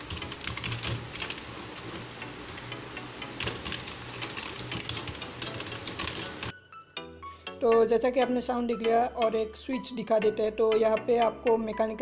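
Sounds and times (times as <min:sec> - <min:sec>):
keyboard typing clatter: 0:00.0 - 0:02.2, 0:03.2 - 0:06.5.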